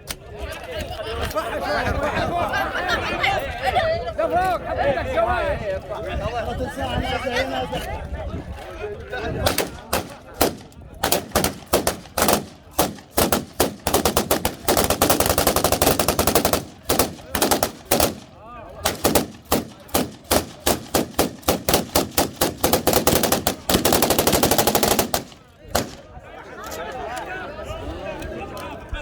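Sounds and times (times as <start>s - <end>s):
automatic rifle gunfire: 9.5s - 26.0s.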